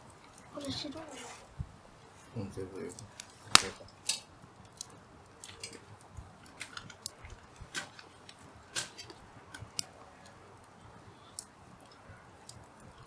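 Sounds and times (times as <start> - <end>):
campfire crackling and popping: 0.0 - 13.0.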